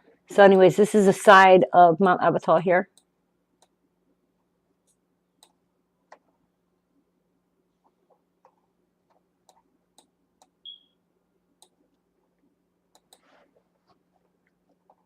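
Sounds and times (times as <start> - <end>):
short high beep: 10.6 - 11.0
computer mouse clicks: 12.9 - 13.3.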